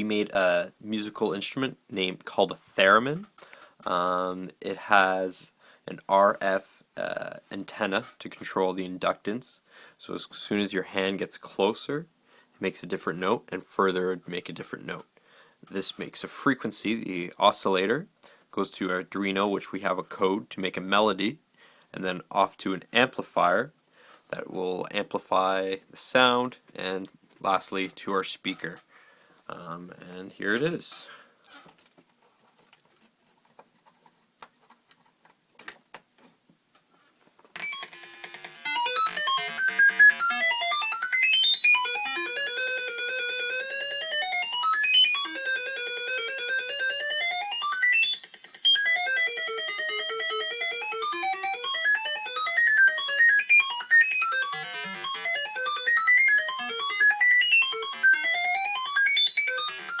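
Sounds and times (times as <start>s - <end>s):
theremin buzzy electronic melody: 37.6s - 60.0s.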